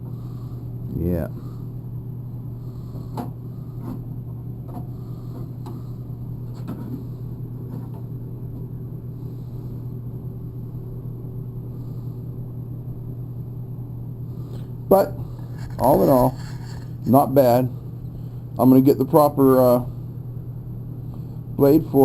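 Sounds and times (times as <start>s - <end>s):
low mechanical hum: 0.0s - 22.0s.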